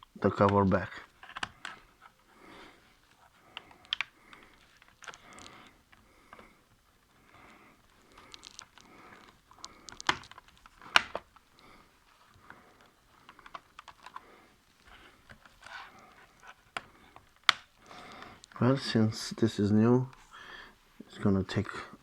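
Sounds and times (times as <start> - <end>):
plastic clicks and scraping: 0.4 - 2.2, 3.0 - 6.5, 7.3 - 18.6.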